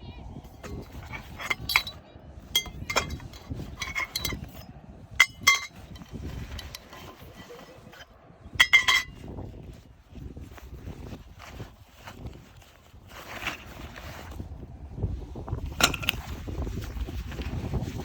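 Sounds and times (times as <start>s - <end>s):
sharp metallic clinks: 0.7s - 6.8s.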